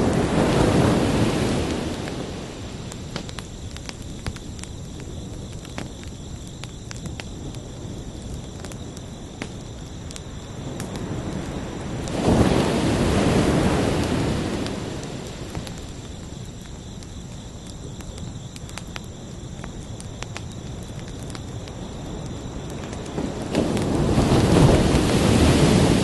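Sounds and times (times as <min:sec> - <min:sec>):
ocean surf: 0:00.0 - 0:02.9, 0:11.0 - 0:15.7, 0:23.2 - 0:26.0
crickets chirping: 0:00.0 - 0:26.0.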